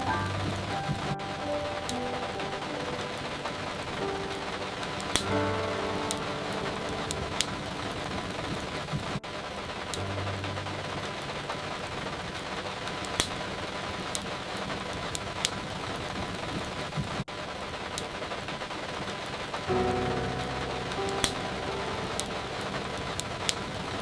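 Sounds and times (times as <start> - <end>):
rain hiss: 0.0 - 24.0
wood fire crackling and popping: 7.0 - 21.4.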